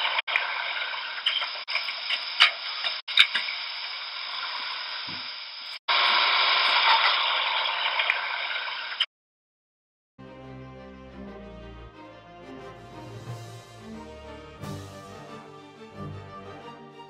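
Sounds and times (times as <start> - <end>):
music: 10.2 - 17.0.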